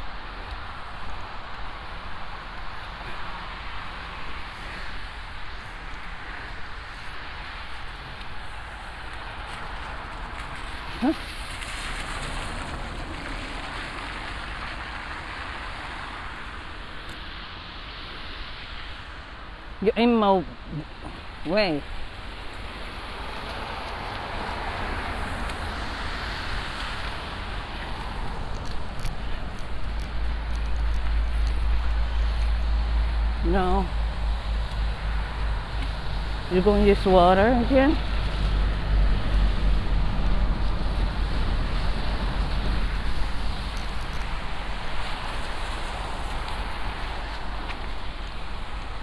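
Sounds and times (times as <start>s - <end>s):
car tyres hissing on snow: 0.0s - 19.8s, 21.2s - 36.4s, 38.0s - 49.0s
wind rushing over microphone: 20.5s - 49.0s.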